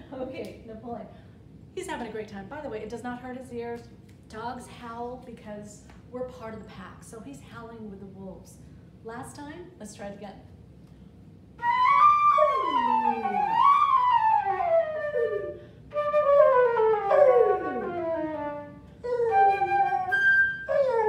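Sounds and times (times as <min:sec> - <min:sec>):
flute playing scale runs: 0:11.6 - 0:21.0
dog howling: 0:12.3 - 0:15.6, 0:16.2 - 0:18.1, 0:19.1 - 0:21.0.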